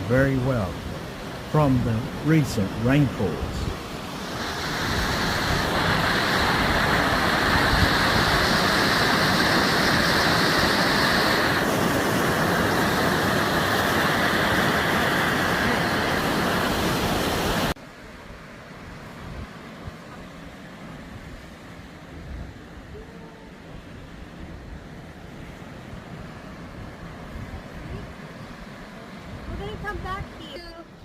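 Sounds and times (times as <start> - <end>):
river rapids rushing: 0.0 - 17.8.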